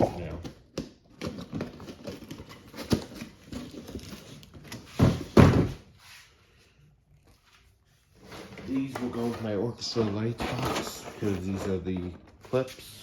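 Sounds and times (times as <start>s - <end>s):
heavy thuds of boxes: 4.9s - 5.8s.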